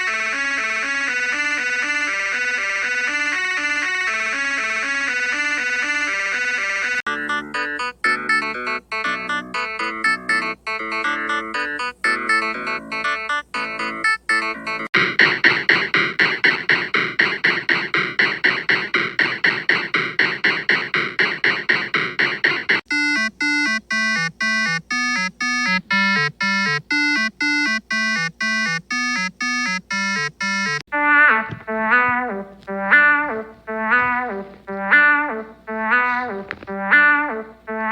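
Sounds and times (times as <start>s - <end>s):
different musical sound: 7.1s - 37.9s
buzzy synth riff: 15.0s - 22.8s, 29.6s - 37.9s.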